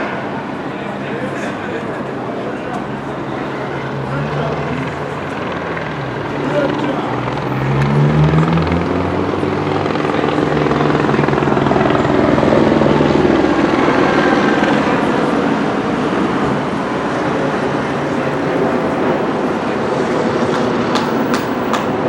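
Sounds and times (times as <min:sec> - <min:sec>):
loud engine drone: 0:00.0 - 0:22.0.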